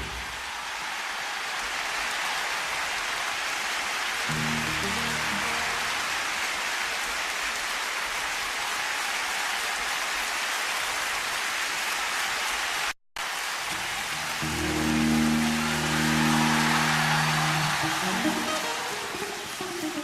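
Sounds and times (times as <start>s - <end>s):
audience applauding: 0.0s - 20.0s
band playing sustained chords: 4.3s - 6.6s, 14.2s - 19.6s.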